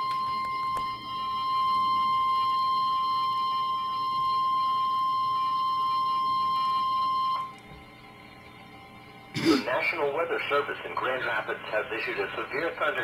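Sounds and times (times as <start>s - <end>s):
steady alarm tone: 0.0s - 9.6s
faint radio hiss: 7.9s - 13.0s.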